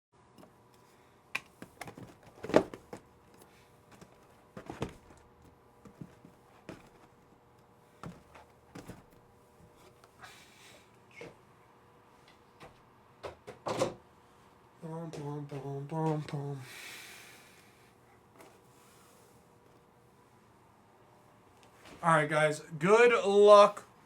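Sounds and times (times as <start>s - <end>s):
faint steady hum: 0.2s - 24.0s
objects handled on a desk: 0.4s - 7.1s, 8.0s - 10.0s.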